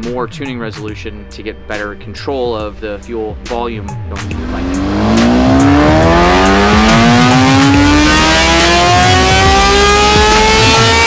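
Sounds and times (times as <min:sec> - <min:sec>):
motorcycle engine revving: 0:04.3 - 0:11.0.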